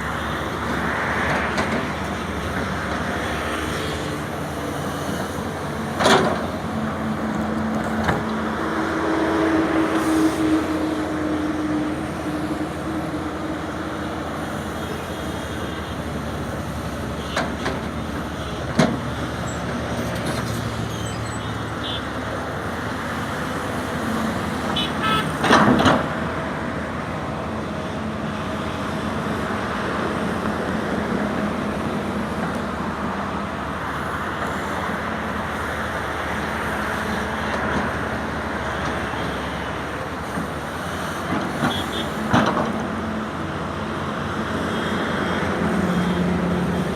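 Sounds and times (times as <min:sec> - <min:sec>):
excavator diesel engine running: 0:00.0 - 0:46.9.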